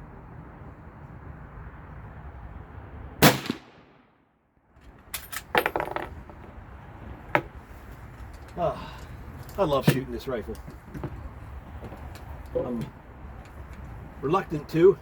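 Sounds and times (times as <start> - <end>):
rifle shot: 3.2 - 4.1.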